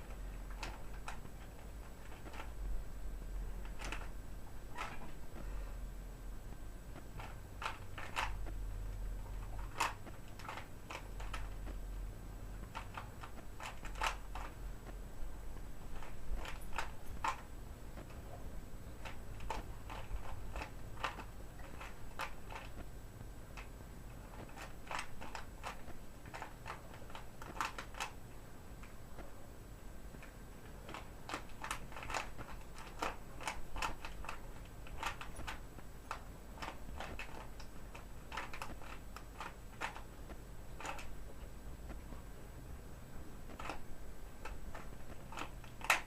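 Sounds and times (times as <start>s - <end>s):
puzzle cube plastic clicks: 0.1s - 2.6s, 3.6s - 5.2s, 6.9s - 8.6s, 9.3s - 11.8s, 12.6s - 15.0s, 19.0s - 22.9s, 23.5s - 28.2s, 30.2s - 40.1s, 40.8s - 41.2s, 43.5s - 46.0s.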